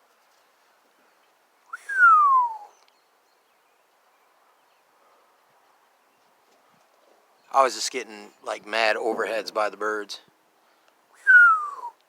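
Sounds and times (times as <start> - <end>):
loud descending whistle: 1.7 - 2.7, 11.2 - 12.0.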